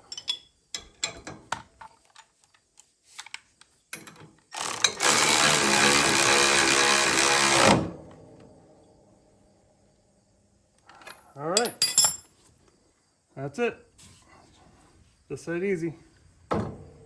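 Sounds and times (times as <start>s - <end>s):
power tool running: 4.6s - 7.9s.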